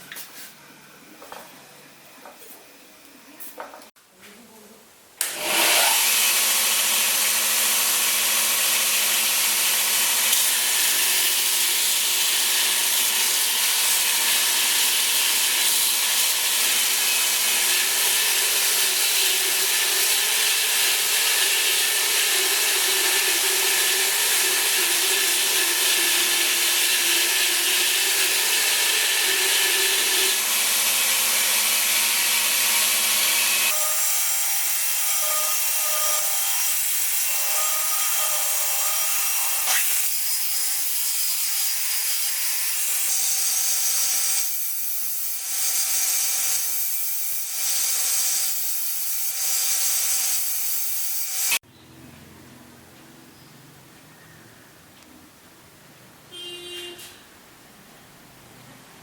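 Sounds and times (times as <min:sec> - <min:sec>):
belt grinder grinding workpiece: 0:05.2 - 0:51.6.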